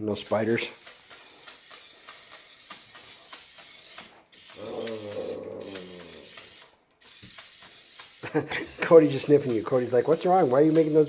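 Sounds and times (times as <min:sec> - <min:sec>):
toy motor ticking and ratcheting: 0:00.0 - 0:11.0
low drawn-out moan: 0:04.6 - 0:06.2.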